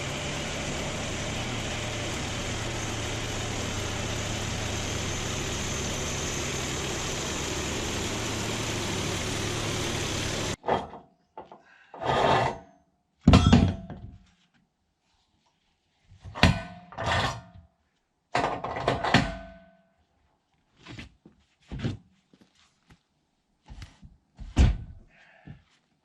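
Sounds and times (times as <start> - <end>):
engine noise: 0.0 - 10.6.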